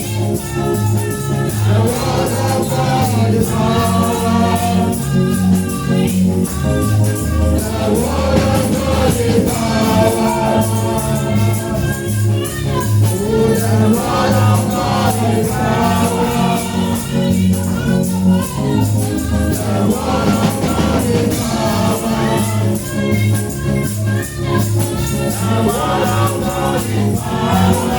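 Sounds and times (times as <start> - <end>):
gospel music with beat and bass: 0.0 - 27.9
voices singing: 0.0 - 27.9.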